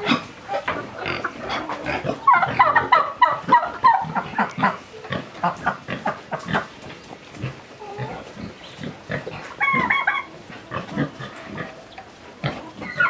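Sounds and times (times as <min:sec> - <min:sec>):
pigs grunting: 0:00.0 - 0:06.7, 0:07.4 - 0:13.0
high-pitched pig call: 0:12.5 - 0:13.0.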